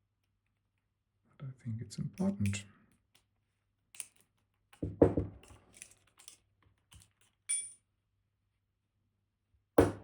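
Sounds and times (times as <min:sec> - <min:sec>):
small metal tool clicks: 0:03.9 - 0:04.8
knocks: 0:04.8 - 0:05.4.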